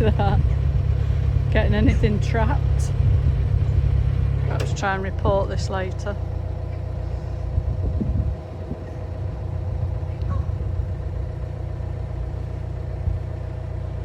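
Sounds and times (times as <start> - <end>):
diesel engine rumbling: 0.0 - 14.0.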